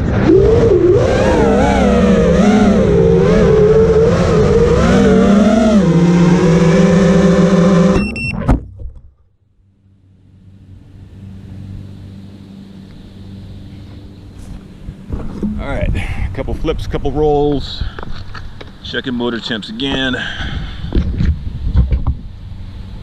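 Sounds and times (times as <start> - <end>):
drone motors whining: 0.0 - 8.4
faint wind hiss: 10.2 - 23.0.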